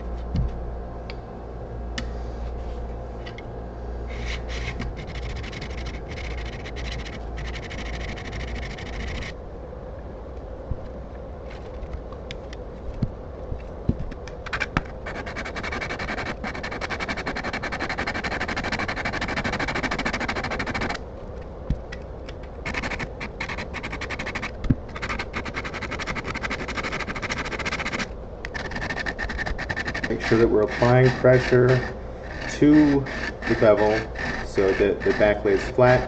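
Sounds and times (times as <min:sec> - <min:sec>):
chisel scraping on sharpening stone: 0:28.9 - 0:36.0.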